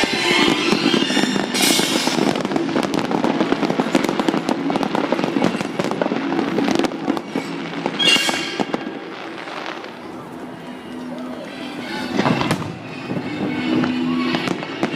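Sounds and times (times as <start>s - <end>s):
fireworks bursting and crackling: 0.0s - 14.9s.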